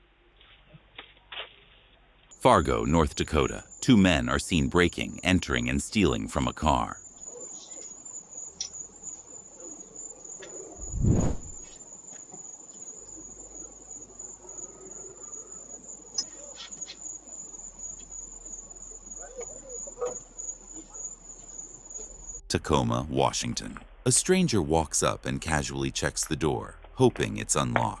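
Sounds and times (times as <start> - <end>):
crickets trilling: 2.5 - 24.4.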